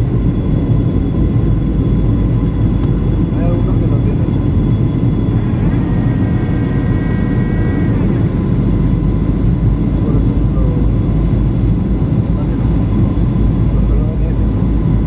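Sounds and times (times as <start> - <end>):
airplane cabin roar: 0.0 - 15.0
faint steady whine: 0.0 - 15.0
brief humming tone: 5.0 - 9.0.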